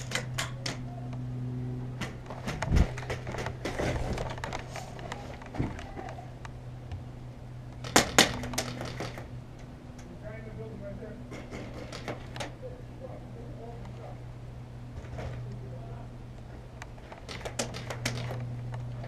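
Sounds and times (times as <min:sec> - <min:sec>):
scattered clicks and knocks: 0:00.0 - 0:00.8, 0:02.0 - 0:06.2, 0:07.7 - 0:10.1, 0:11.3 - 0:12.6, 0:16.8 - 0:19.0
steady low hum: 0:00.0 - 0:19.0
loud sharp cracks: 0:07.8 - 0:09.2.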